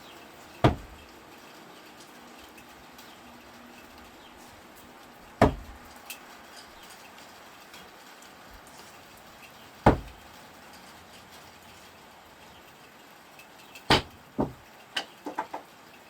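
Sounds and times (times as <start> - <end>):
screwdrivers hitting target: 0.7 - 1.0, 5.4 - 5.8, 9.9 - 10.2, 13.9 - 14.6.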